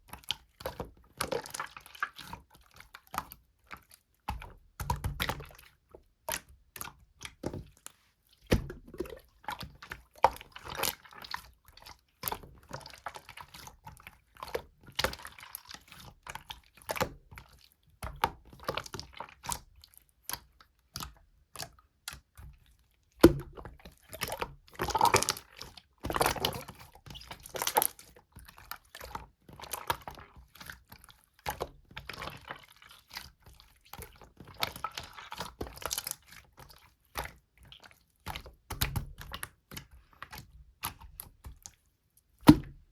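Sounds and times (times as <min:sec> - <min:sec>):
slime squishing and popping: 0:24.2 - 0:28.0.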